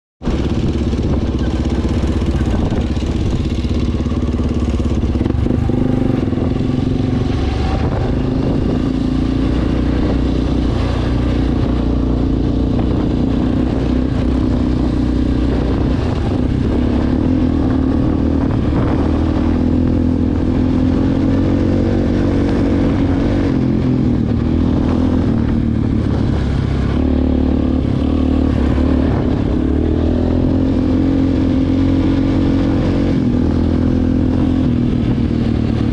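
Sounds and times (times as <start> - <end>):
atv engine running: 0.2 - 35.9.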